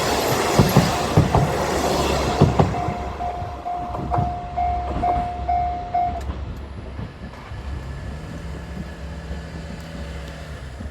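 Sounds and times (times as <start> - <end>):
train rumble and wheel knocks: 0.0 - 10.9
level crossing bell ringing: 2.5 - 6.4.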